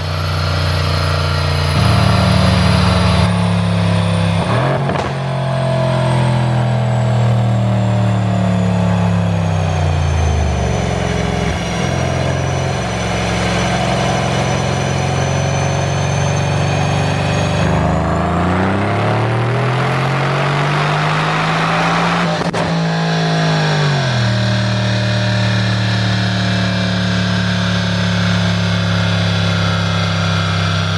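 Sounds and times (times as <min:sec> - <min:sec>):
car engine idling and revving: 0:00.0 - 0:30.9
exhaust crack: 0:00.2 - 0:20.5.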